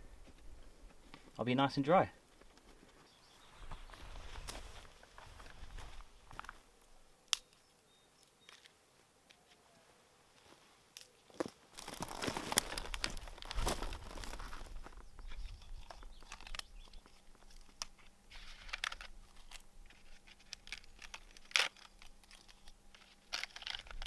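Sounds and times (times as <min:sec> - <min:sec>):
dry material rustling and crunching: 0:03.8 - 0:06.6, 0:11.3 - 0:24.0
small snaps and clicks: 0:07.3 - 0:07.6.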